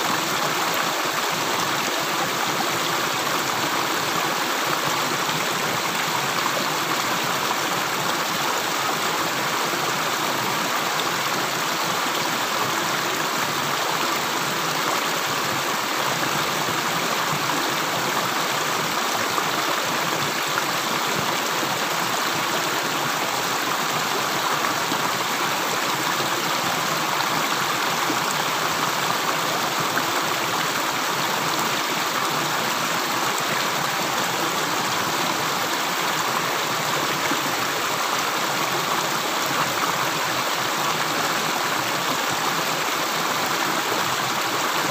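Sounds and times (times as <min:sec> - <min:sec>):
water flowing: 0:00.0 - 0:44.9.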